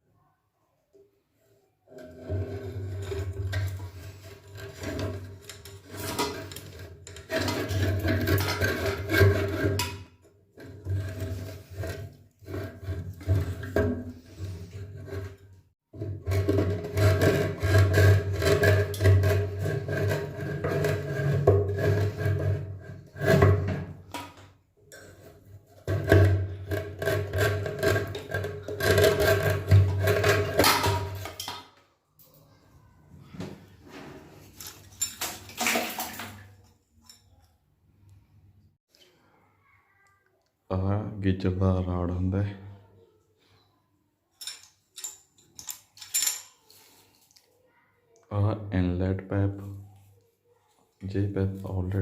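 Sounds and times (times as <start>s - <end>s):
tools scraping on metal: 1.9s - 32.4s, 44.4s - 47.2s.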